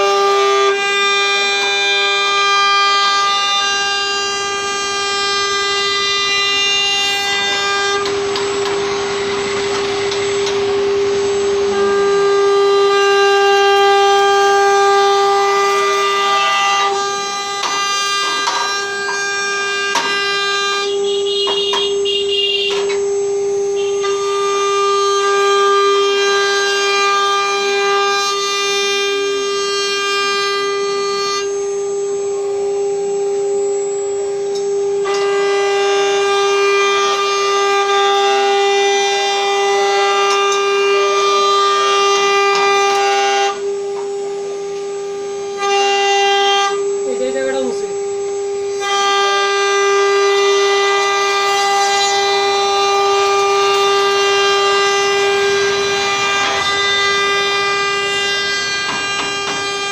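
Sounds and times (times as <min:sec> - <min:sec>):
router spindle whine: 0:00.0 - 0:59.9
stepper motors whining: 0:00.0 - 0:59.9.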